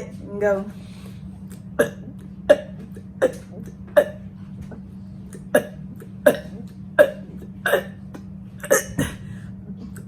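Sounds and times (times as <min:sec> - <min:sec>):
woman burping: 0:05.4 - 0:08.0, 0:08.6 - 0:09.2.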